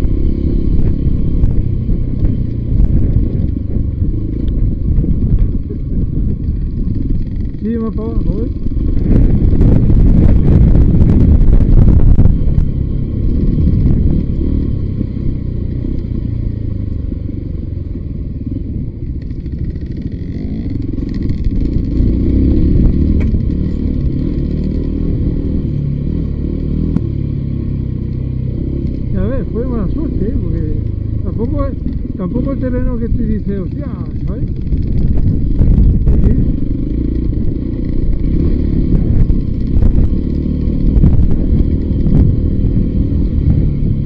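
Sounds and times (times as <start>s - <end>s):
wind on the microphone: 0.0s - 15.6s, 29.0s - 44.0s
motorcycle engine: 0.0s - 44.0s
rattling and clattering: 30.6s - 38.2s.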